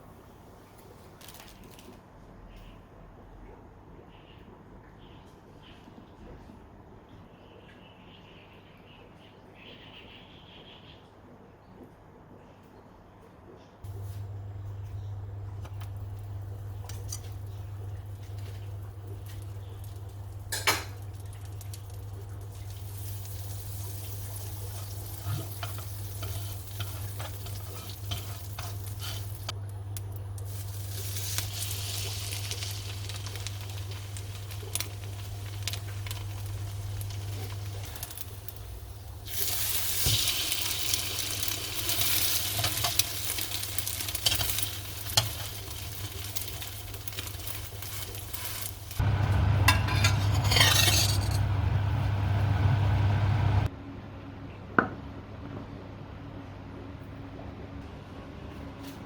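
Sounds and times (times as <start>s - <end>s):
steady low hum: 11.2s - 31.6s, 48.9s - 59.0s
food sizzling in a pan: 16.1s - 29.6s, 30.4s - 53.7s.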